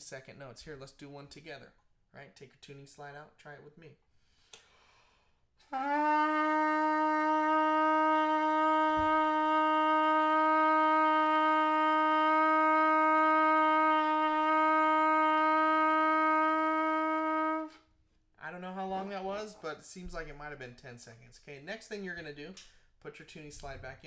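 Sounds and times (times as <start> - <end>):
trumpet mouthpiece long note: 5.6 - 17.8.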